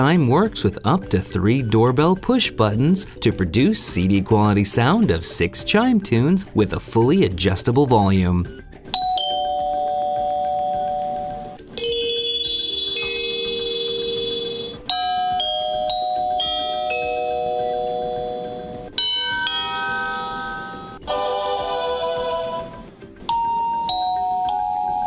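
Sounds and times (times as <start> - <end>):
electronic door chime melodies: 8.9 - 25.0.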